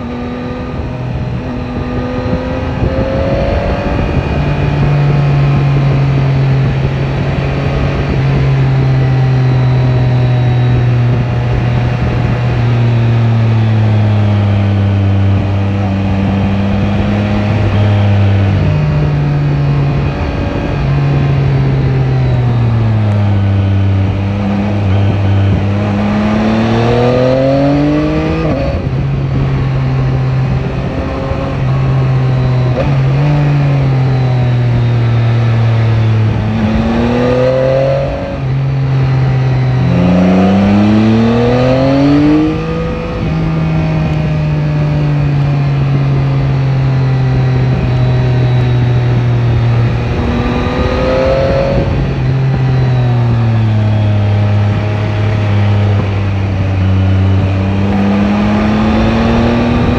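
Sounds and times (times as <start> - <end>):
motorcycle engine running: 0.0 - 59.9
wind noise: 0.0 - 59.9.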